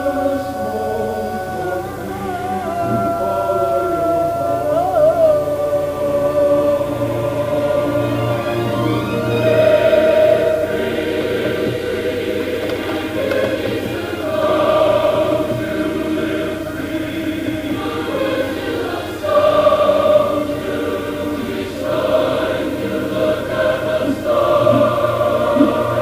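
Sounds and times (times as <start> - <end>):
choir singing held chords: 0.0 - 26.0
orchestral backing: 4.5 - 26.0.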